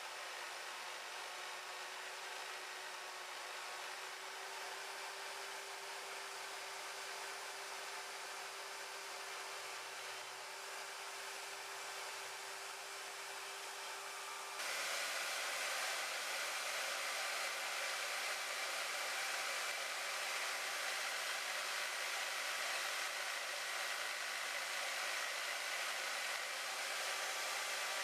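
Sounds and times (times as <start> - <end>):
band saw cutting metal: 1.5 - 28.0.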